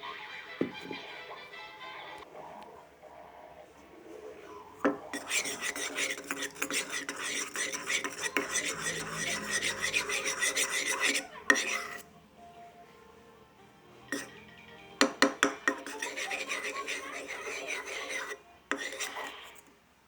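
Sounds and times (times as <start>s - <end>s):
spoon scraping round a bowl: 2.3s - 12.1s, 14.0s - 19.7s
knock on bowl: 15.0s - 15.7s.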